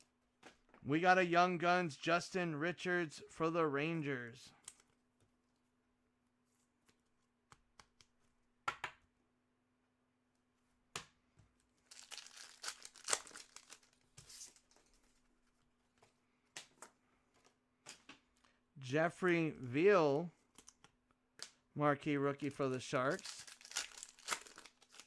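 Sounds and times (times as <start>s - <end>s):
cards clicking and tapping: 6.9s - 9.0s
foil wrapper tearing and crinkling: 11.8s - 14.9s, 23.0s - 25.0s.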